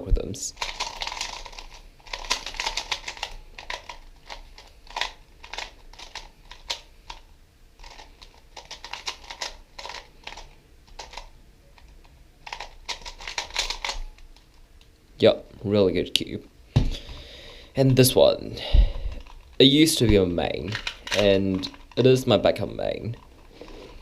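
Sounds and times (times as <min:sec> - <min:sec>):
plastic cube clicking turns: 0:00.6 - 0:07.2, 0:07.8 - 0:14.5, 0:20.6 - 0:22.0.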